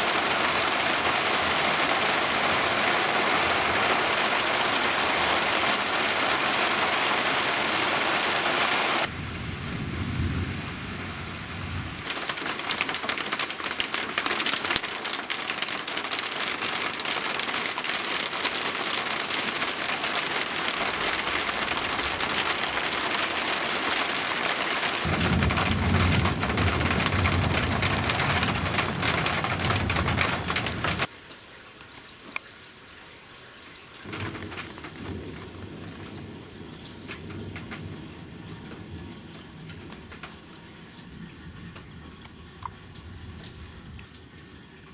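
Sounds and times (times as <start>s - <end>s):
heavy rain: 0.0s - 44.9s
thunder rumbling: 9.0s - 12.9s, 25.0s - 31.1s, 34.1s - 40.5s.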